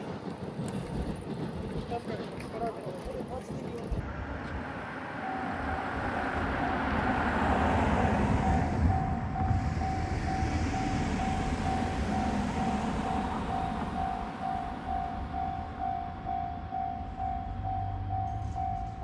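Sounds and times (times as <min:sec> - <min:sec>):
train rumbling: 0:00.0 - 0:19.0
railroad crossing bell clanging: 0:05.1 - 0:19.0.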